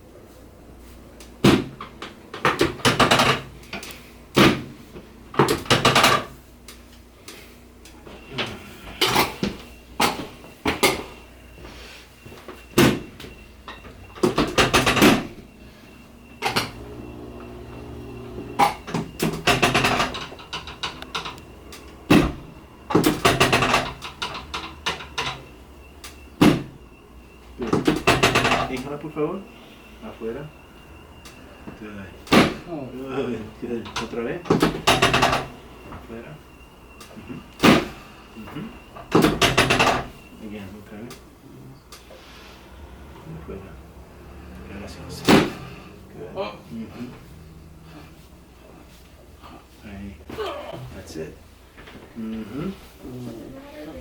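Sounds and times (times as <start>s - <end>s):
knocks and clunks on a treatment table: 1.4s - 6.4s, 12.7s - 15.5s, 18.6s - 25.5s, 27.6s - 28.8s, 33.8s - 36.1s, 38.6s - 40.2s, 45.1s - 45.8s.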